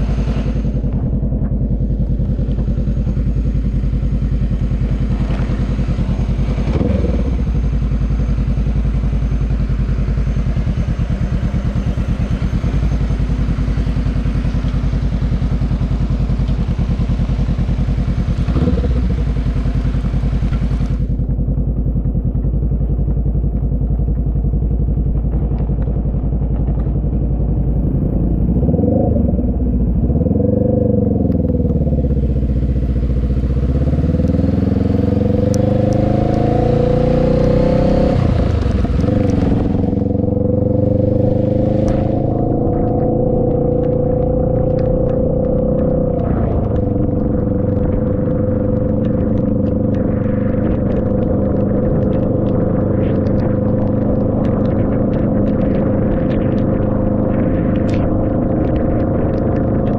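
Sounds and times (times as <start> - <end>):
motorbike engine running: 0.0 - 59.9
rain hiss on wet road: 50.6 - 54.8.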